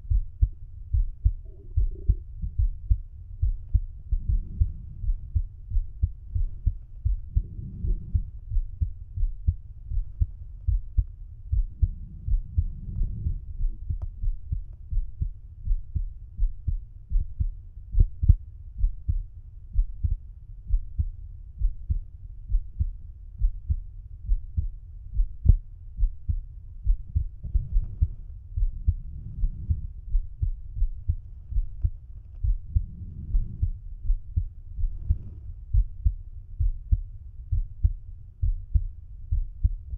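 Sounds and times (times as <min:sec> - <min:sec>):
heartbeat through stethoscope: 0:00.0 - 0:39.9.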